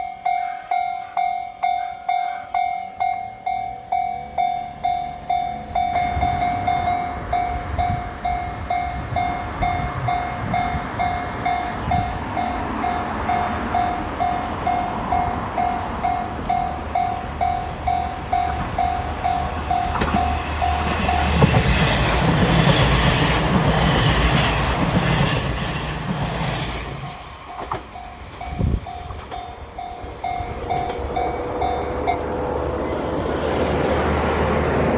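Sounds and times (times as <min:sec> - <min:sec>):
diesel railcar rumble: 0:00.0 - 0:34.9
wheels clattering over rails: 0:17.4 - 0:34.9
level-crossing bell ringing: 0:23.6 - 0:32.3.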